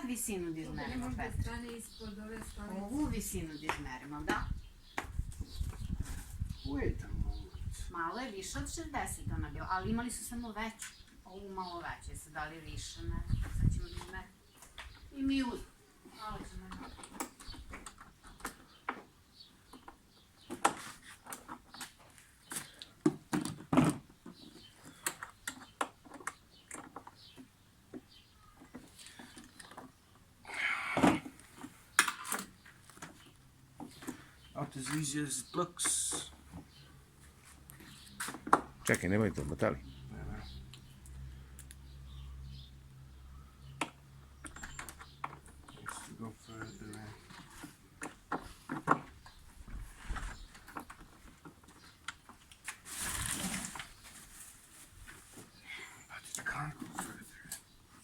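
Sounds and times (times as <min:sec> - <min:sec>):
lawnmower parts clicking and knocking: 0:16.7 - 0:30.0, 0:31.1 - 0:34.2.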